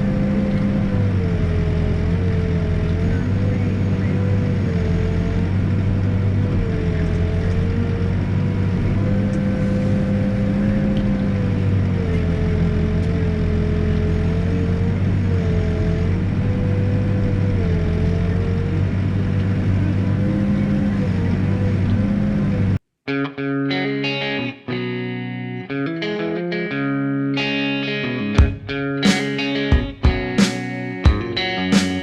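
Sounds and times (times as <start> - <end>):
diesel engine running under load: 0.0 - 22.8.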